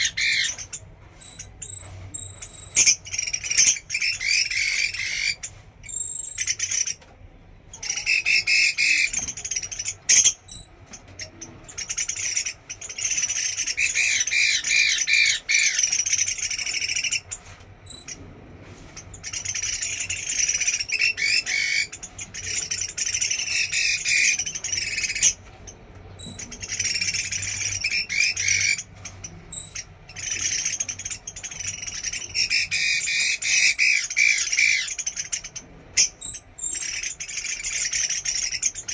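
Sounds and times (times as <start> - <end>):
songbird warbling: 0.0 - 6.9, 29.5 - 38.9.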